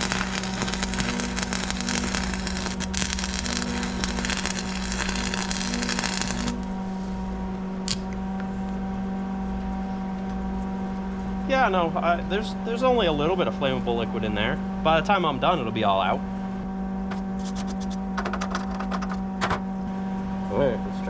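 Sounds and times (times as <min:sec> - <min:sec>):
welding arc crackling: 0:00.0 - 0:06.8, 0:07.8 - 0:08.1
steady hum: 0:00.0 - 0:11.4.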